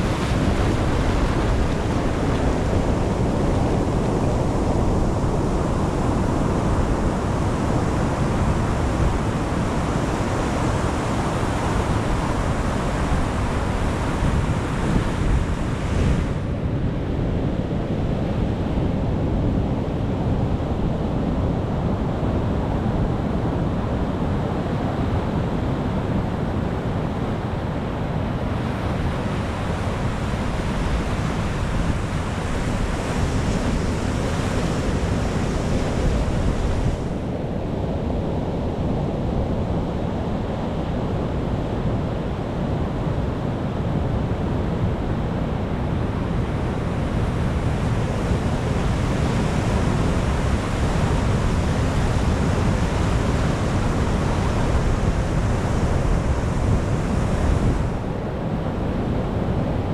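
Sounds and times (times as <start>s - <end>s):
surf breaking on rocks: 0.0s - 4.1s.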